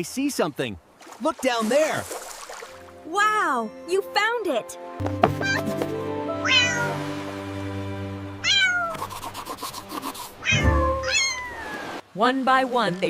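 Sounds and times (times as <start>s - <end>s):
background music with held notes: 2.7s - 11.2s
cat meowing: 5.4s - 5.6s, 6.4s - 7.0s, 8.4s - 9.0s, 10.4s - 12.0s.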